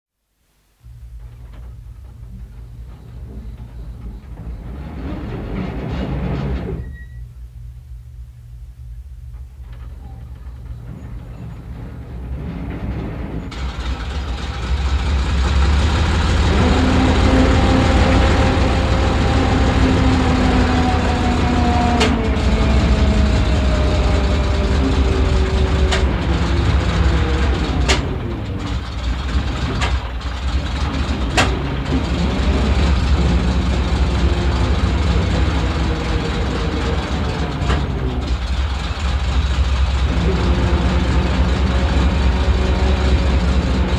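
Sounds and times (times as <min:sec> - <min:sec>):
heavy engine running: 0:00.8 - 0:43.9
engine misfire bangs: 0:09.3 - 0:43.9.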